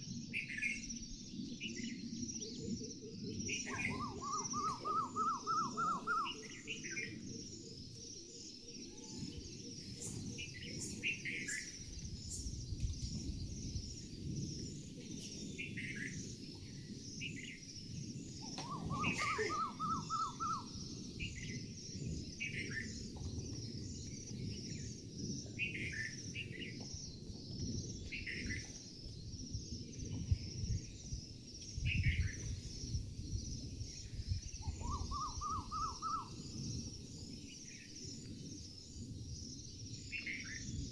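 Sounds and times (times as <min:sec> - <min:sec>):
bird rising call: 0:03.6 - 0:06.9, 0:18.6 - 0:20.7.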